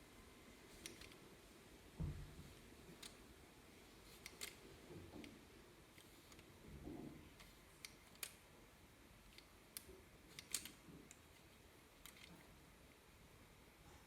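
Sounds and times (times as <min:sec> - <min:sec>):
faint plastic clicks: 0:04.0 - 0:08.4, 0:09.2 - 0:12.5.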